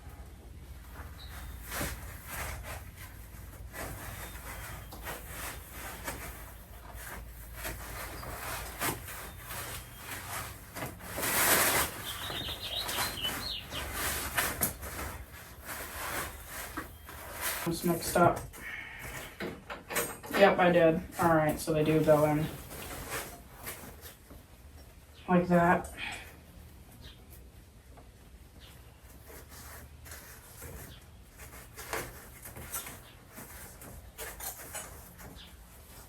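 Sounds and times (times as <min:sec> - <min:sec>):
costume fabric rustling: 0:00.7 - 0:18.3.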